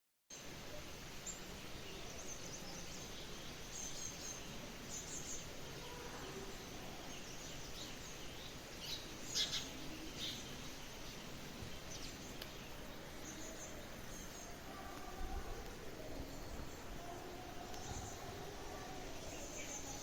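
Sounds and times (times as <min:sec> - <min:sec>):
light rain hissing: 0:00.3 - 0:20.0
songbirds chirping: 0:00.3 - 0:20.0.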